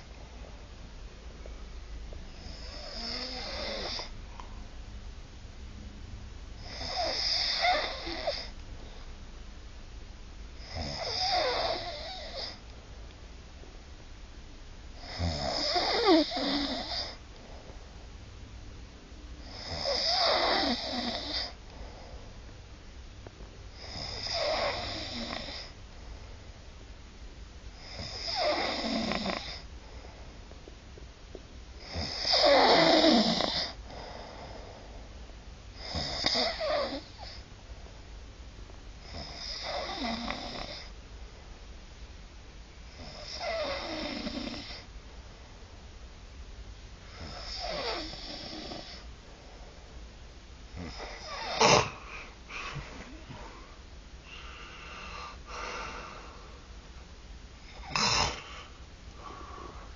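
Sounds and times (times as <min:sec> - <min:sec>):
person snoring: 0:02.4 - 0:04.1, 0:06.6 - 0:08.5, 0:10.6 - 0:12.6, 0:15.0 - 0:17.2, 0:19.4 - 0:21.6, 0:23.8 - 0:25.8, 0:27.8 - 0:29.6, 0:31.8 - 0:34.7, 0:35.8 - 0:37.4, 0:47.1 - 0:49.1, 0:50.8 - 0:56.6, 0:57.7 - 0:59.9.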